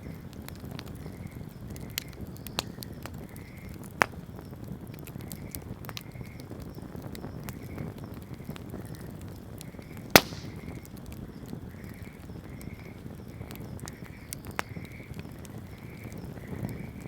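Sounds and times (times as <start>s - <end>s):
campfire crackling: 0.0s - 17.0s
loud sharp pop from fire: 10.1s - 11.0s.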